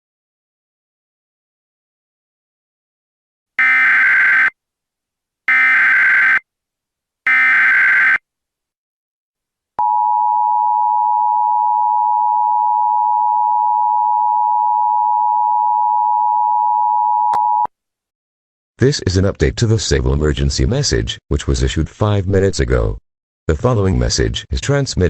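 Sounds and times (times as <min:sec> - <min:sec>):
data bursts: 0:07.3 - 0:08.2.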